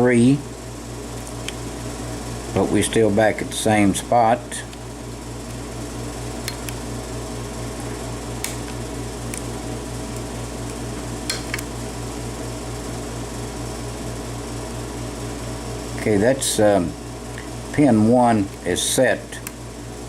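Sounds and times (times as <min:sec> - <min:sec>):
pulsing mechanical hum: 0:00.0 - 0:20.0.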